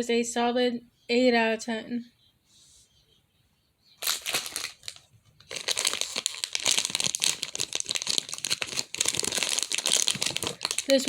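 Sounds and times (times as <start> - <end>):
packaging crinkling: 4.0 - 11.0.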